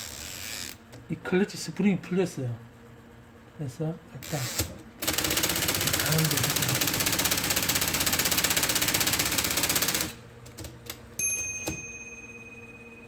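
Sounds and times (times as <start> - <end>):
typewriter mechanism clatter: 4.2 - 11.0
high ringing tone: 11.2 - 13.0.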